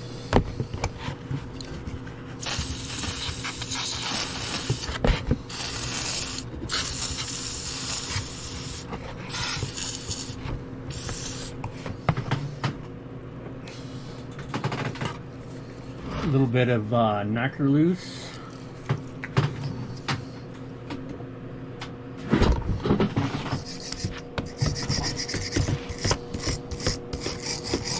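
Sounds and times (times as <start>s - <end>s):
hissing bursts: 2.4s - 11.6s.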